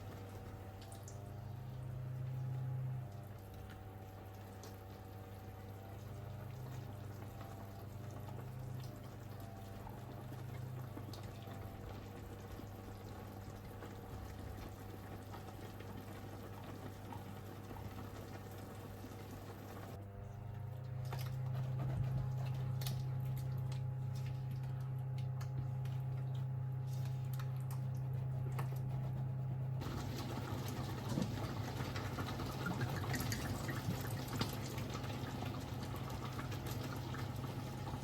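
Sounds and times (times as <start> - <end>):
liquid bubbling: 21.6 - 38.0.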